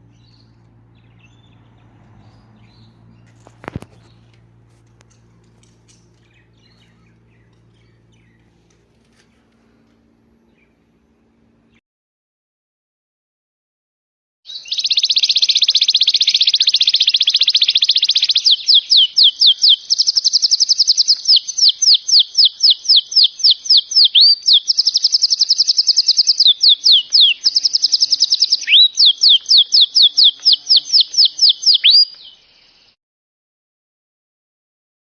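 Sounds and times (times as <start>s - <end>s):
songbird singing trills: 0.0s - 11.8s, 14.5s - 33.0s.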